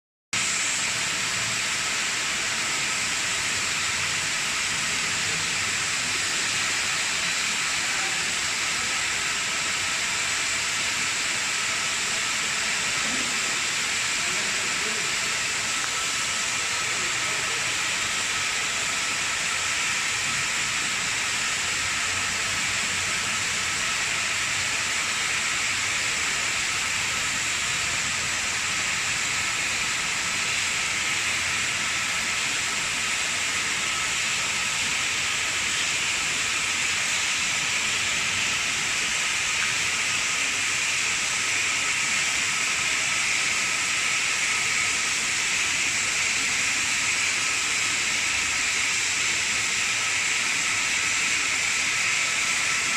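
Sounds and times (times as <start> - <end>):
cutting torch hissing: 0.4 - 52.9.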